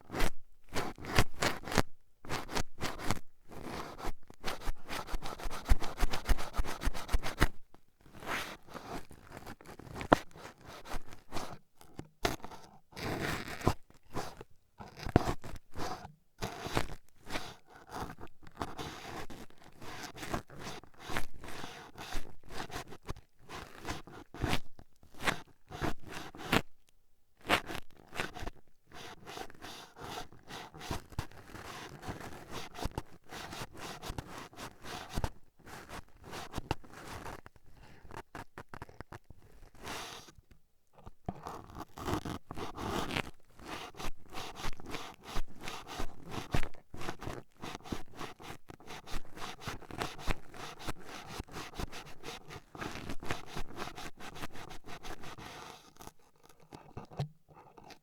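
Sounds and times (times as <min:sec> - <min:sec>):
toothpicks scratching microphone: 0:52.8 - 0:58.0.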